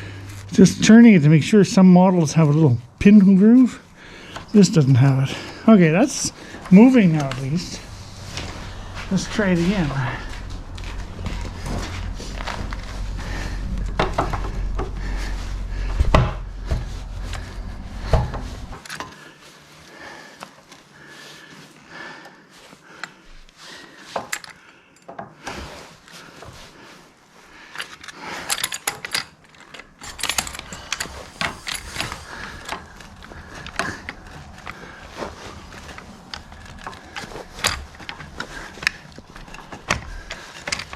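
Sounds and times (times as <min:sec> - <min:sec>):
loud low rumble: 0:00.0 - 0:01.8, 0:06.4 - 0:18.8
metallic clicks and rattles of tools: 0:24.2 - 0:25.2, 0:27.7 - 0:40.9.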